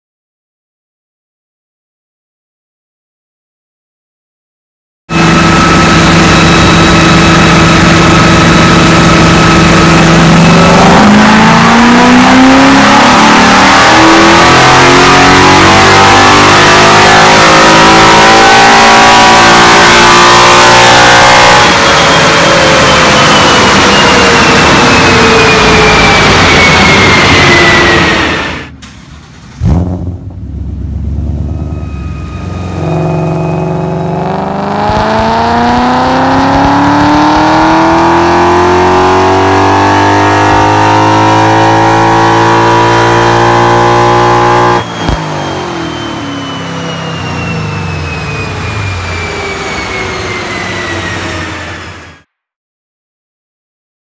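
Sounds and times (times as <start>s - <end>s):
falling whine: 5.1s - 52.2s
car engine revving on dyno: 5.1s - 52.3s
sharp exhaust bang: 28.7s - 36.0s.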